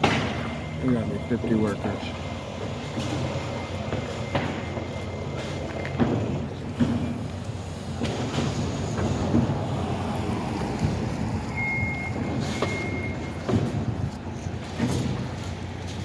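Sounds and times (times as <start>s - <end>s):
sharp knocks: 0.0s - 0.6s
vehicle warning beeper: 0.0s - 7.4s, 11.4s - 13.8s
heavy machinery engine rumble: 0.0s - 16.0s.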